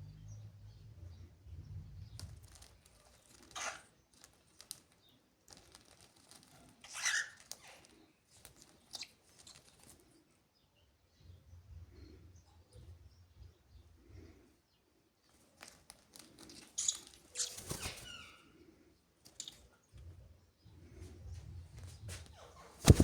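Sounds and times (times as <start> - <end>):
birds rustling and scraping: 2.0 - 10.4, 15.2 - 23.0
wing flutters: 15.7 - 18.4, 22.5 - 23.0.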